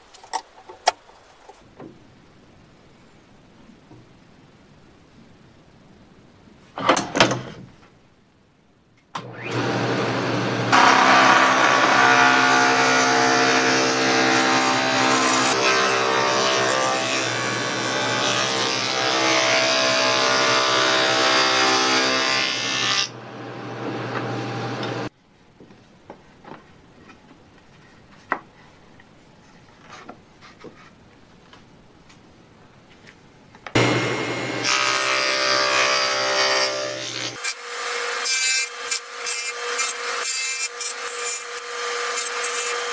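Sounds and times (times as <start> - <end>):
power saw running: 9.4 - 16.2, 33.8 - 35.7
saw cutting plywood: 9.4 - 23.1, 33.8 - 42.9.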